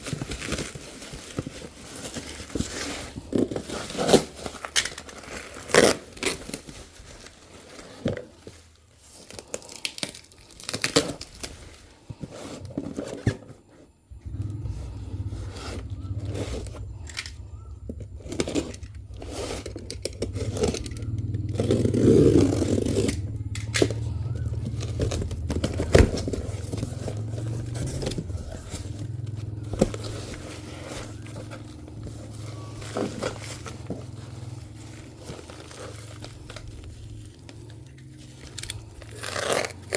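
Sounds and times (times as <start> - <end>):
plastic packaging crinkling tearing: 0.0 - 13.2, 15.3 - 39.9
steady low hum: 14.1 - 39.9.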